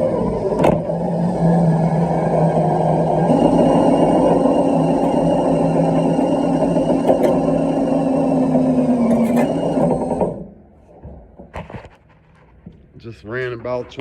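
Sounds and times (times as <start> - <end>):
drill motor whine: 0.0 - 10.4.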